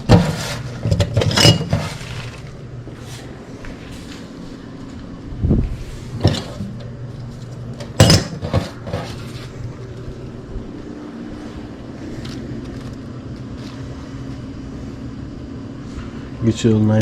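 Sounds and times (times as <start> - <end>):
steady low hum: 0.0 - 17.0
cookware clanking: 0.1 - 2.1, 7.8 - 9.2.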